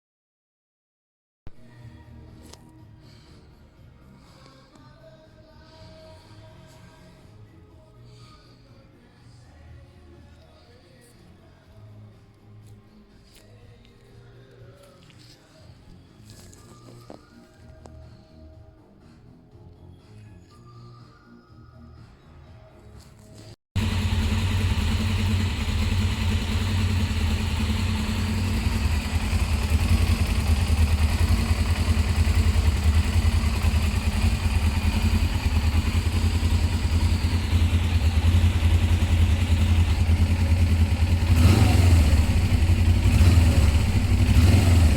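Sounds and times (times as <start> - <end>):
motorcycle engine running: 23.8 - 44.9.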